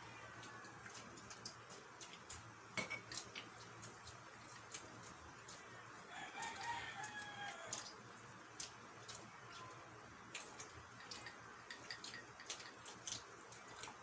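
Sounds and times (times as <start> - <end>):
rooster crowing: 0.0 - 1.0, 6.1 - 7.9
small clicks and taps: 10.3 - 14.0.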